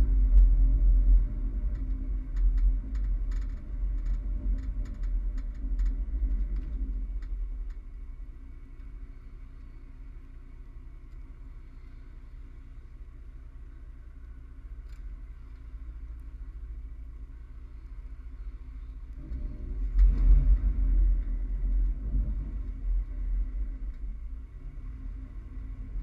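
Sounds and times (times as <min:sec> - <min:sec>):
pickup truck engine rumble: 0:00.0 - 0:26.0
scattered clicks: 0:01.6 - 0:07.8.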